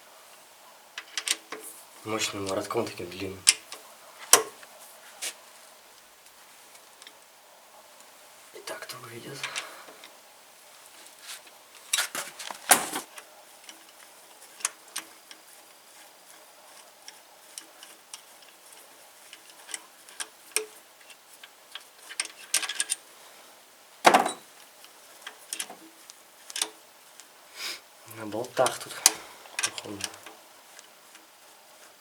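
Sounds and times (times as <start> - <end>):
hand tools clicking on metal: 28.2 - 31.2.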